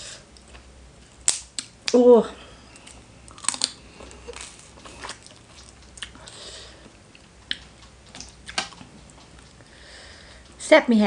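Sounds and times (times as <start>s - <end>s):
moist chewing: 2.7s - 9.7s
crisp crunches: 2.8s - 6.2s.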